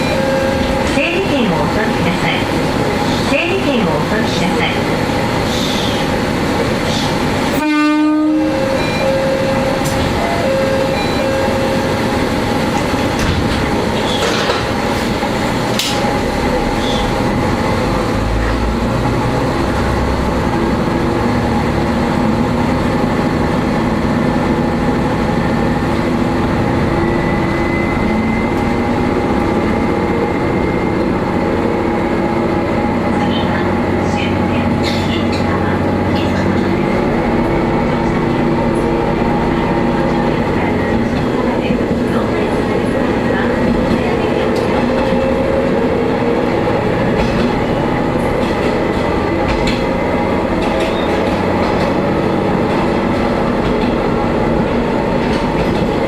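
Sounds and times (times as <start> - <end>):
railcar engine and rail noise: 0.0 - 56.0
train horn blast: 7.5 - 9.4.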